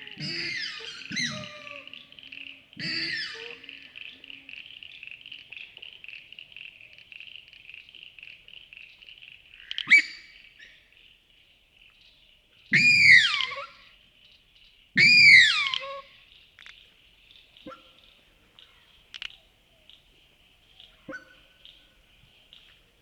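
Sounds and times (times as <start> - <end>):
swamphen squealing calls: 0.0 - 2.0, 2.8 - 3.8, 15.0 - 15.9.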